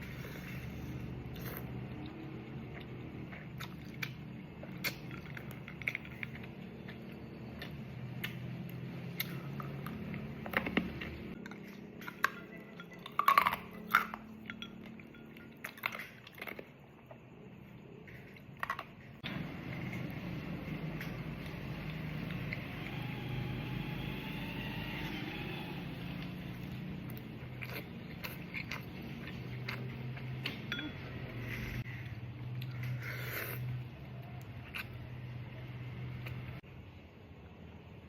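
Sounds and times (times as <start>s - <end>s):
person chewing noodles: 0.0s - 17.2s, 26.1s - 35.1s
steady low hum: 0.0s - 38.0s.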